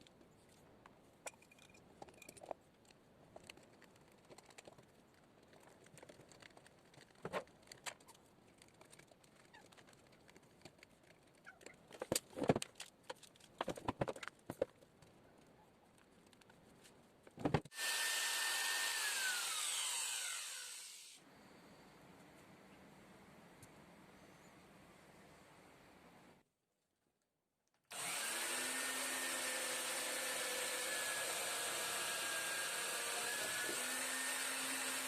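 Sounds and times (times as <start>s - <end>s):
electric drill motor whirring: 17.7s - 21.2s, 27.9s - 35.0s.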